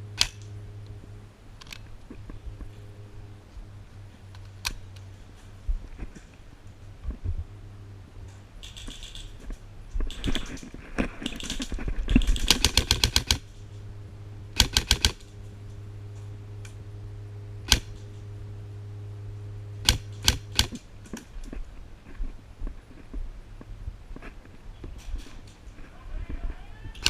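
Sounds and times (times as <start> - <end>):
airsoft guns firing: 8.6 - 9.4, 10.1 - 13.5, 14.6 - 15.4.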